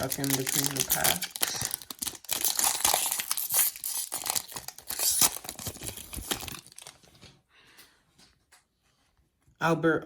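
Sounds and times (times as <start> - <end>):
plastic wrapper tearing and crinkling: 0.0 - 7.3.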